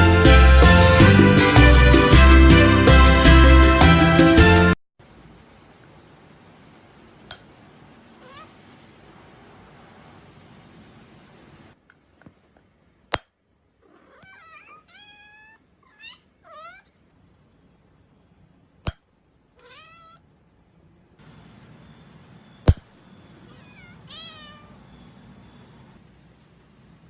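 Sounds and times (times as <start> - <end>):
cat meowing: 8.2 - 8.6, 13.8 - 17.0, 19.6 - 20.2, 23.4 - 25.0.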